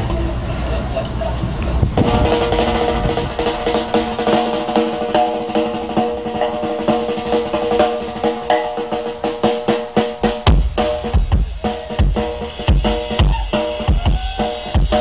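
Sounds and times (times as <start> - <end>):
didgeridoo drone: 0.0 - 9.4, 10.2 - 15.0
fast drum kit: 1.8 - 15.0
heavy bass drum hits: 1.8 - 15.0
hand percussion: 10.4 - 15.0.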